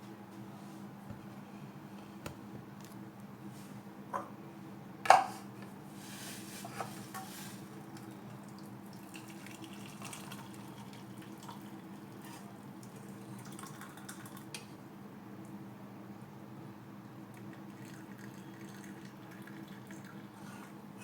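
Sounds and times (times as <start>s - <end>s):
liquid pouring and dripping: 8.0s - 11.9s, 12.8s - 14.5s, 17.5s - 20.2s.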